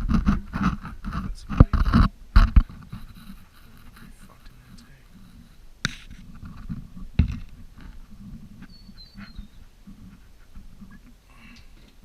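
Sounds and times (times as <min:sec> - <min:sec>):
sharp knocks: 0:05.8 - 0:07.5
high wavering chirp: 0:08.6 - 0:09.7.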